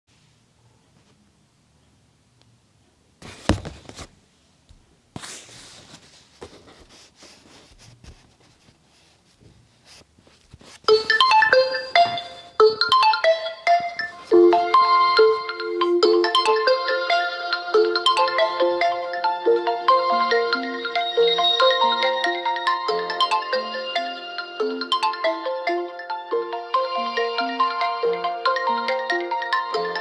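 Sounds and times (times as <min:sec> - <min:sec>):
faint taps and rustles: 0:03.2 - 0:14.4
phone ringtone melody: 0:10.8 - 0:30.0.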